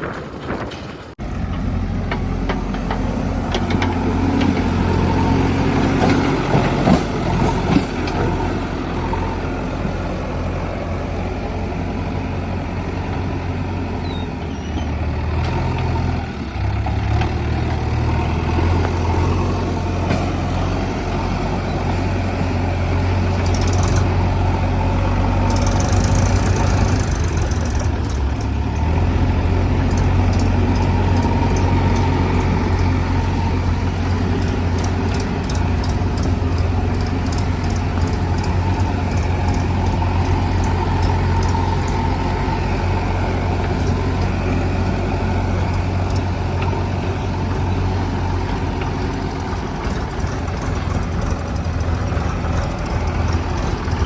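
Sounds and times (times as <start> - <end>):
diesel engines running: 0.0 - 54.0.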